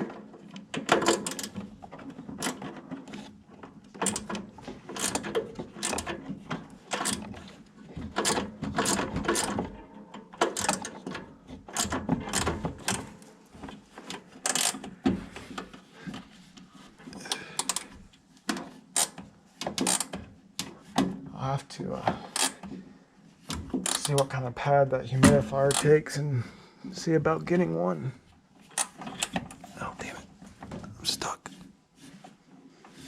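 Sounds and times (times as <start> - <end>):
hand ratchet clicking: 0.9 - 1.6, 4.0 - 4.3, 4.9 - 6.2, 6.9 - 7.4, 10.4 - 11.1, 11.7 - 13.1, 14.4 - 14.8, 17.2 - 17.9, 18.9 - 19.2, 19.8 - 20.1, 22.3 - 22.6, 23.8 - 24.3.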